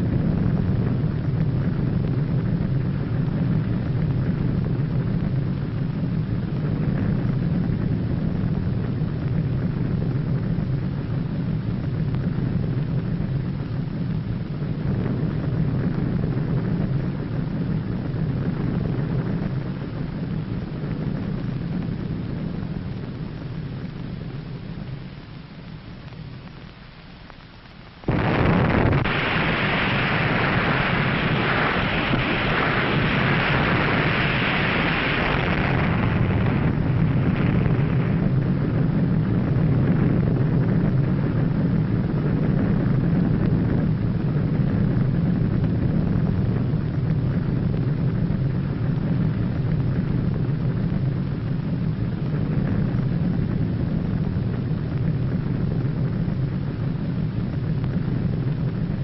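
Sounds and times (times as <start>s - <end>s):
deep rumble: 0.0s - 59.0s
explosion blast of rushing hiss: 28.1s - 38.5s.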